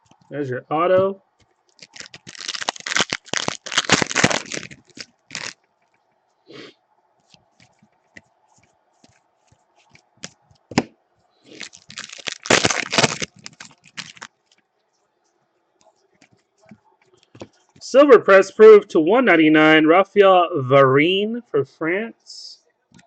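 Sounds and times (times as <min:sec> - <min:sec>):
wrapper crinkling and tearing: 0:01.7 - 0:05.6, 0:11.5 - 0:14.3.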